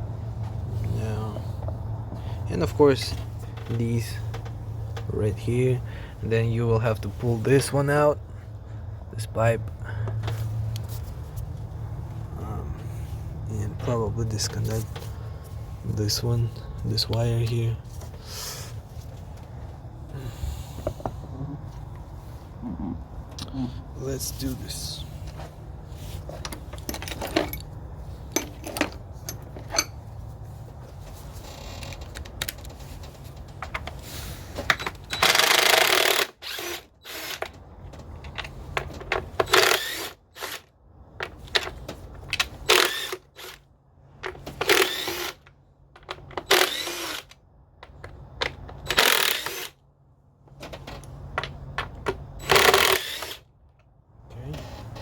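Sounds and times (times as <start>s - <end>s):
tools and parts clicking: 28.3s - 30.0s
ratchet wrench ratcheting: 35.1s - 37.5s, 39.4s - 40.6s, 42.6s - 43.6s, 44.6s - 45.4s, 46.4s - 47.4s, 48.8s - 49.8s, 52.4s - 53.4s.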